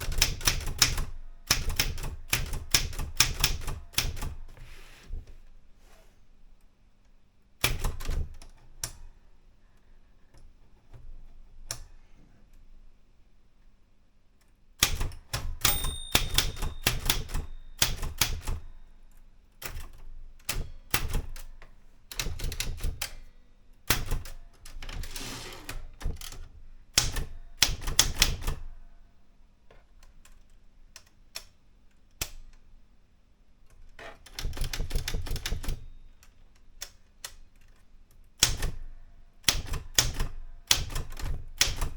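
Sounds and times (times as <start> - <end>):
manual typewriter keystrokes: 0.0 - 4.6, 7.6 - 9.0, 14.8 - 28.8, 29.9 - 32.6, 33.7 - 41.9
typewriter bell ringing: 15.5 - 18.6.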